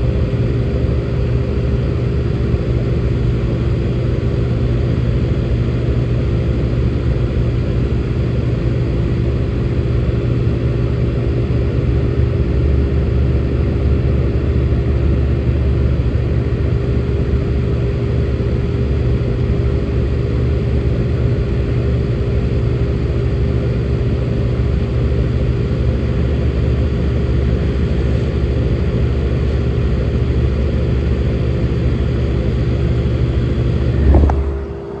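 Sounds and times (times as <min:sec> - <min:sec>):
fan humming: 0:32.1 - 0:35.0
short thump: 0:33.8 - 0:35.0.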